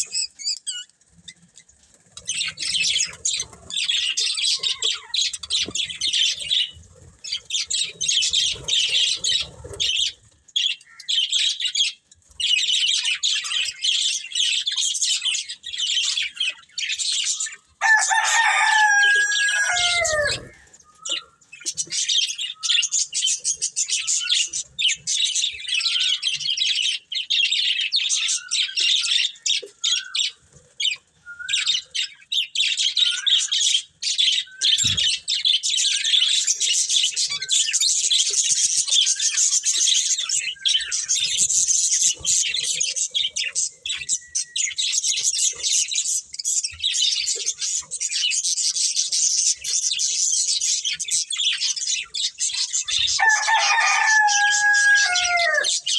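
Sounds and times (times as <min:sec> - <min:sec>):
budgerigars chattering and warbling: 0:00.0 - 0:55.9.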